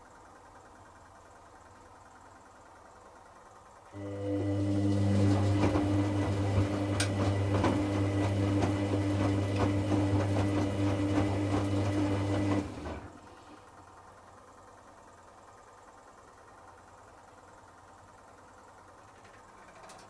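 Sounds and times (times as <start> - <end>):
washing machine motor hum: 0.1 - 20.0
clicks from tumbling load: 19.1 - 20.0.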